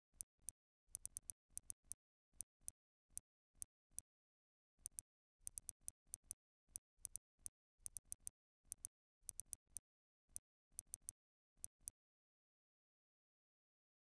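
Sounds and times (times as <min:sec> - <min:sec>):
smartphone touch ticks: 0:00.1 - 0:04.1, 0:04.8 - 0:12.0.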